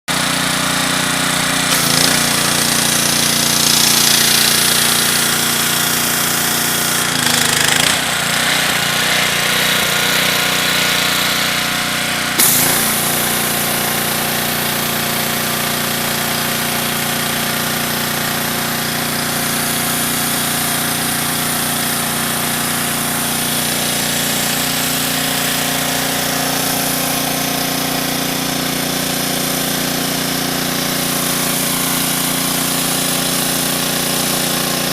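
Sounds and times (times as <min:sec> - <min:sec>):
pressure washer spraying: 0:00.1 - 0:34.9.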